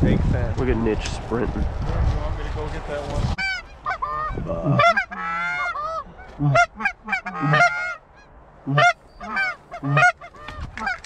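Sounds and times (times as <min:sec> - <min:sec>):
goose honking and clucking: 0:03.4 - 0:11.0.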